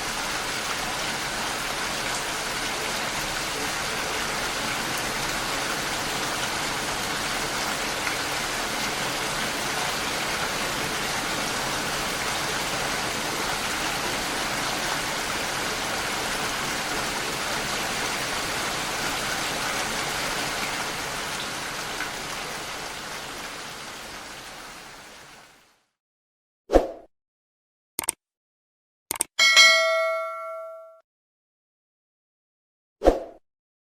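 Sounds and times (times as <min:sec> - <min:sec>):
steady rain: 0:00.0 - 0:25.9
short sharp clicks: 0:28.0 - 0:28.2, 0:29.1 - 0:29.3.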